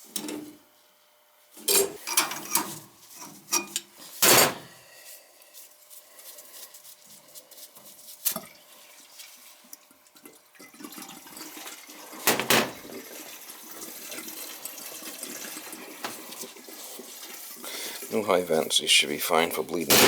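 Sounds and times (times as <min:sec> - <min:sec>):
water running out of boiler: 0:08.2 - 0:20.0.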